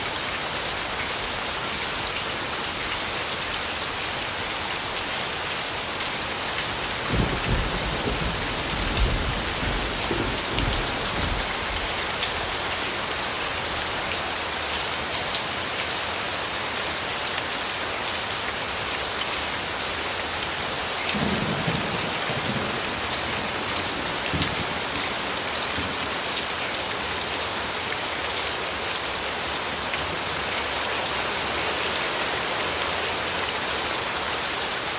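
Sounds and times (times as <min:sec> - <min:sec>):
heavy rain: 0:00.0 - 0:34.9
thunder rumbling: 0:07.1 - 0:11.8.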